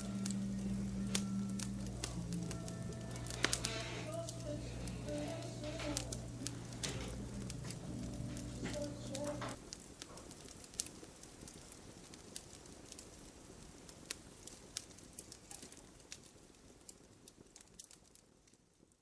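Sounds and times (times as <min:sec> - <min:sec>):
music or voice: 0:00.0 - 0:09.6
wood fire crackling: 0:00.0 - 0:19.0.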